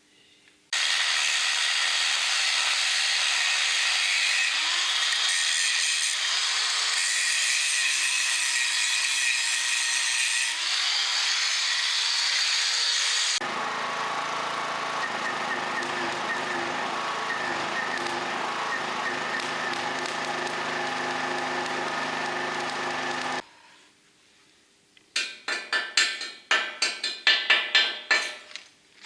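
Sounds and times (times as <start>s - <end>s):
wavering whine: 15.0s - 23.4s
arc welding crackling hiss: 15.2s - 23.4s.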